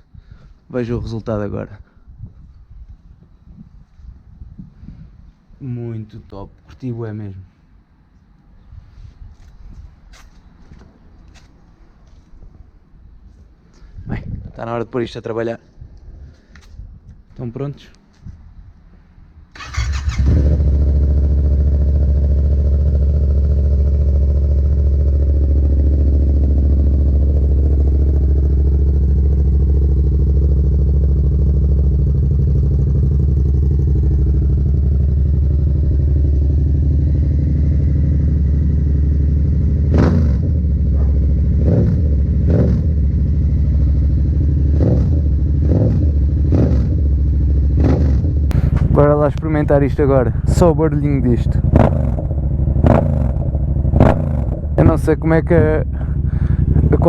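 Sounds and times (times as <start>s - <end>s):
motorcycle engine starting and idling: 19.5s - 57.0s.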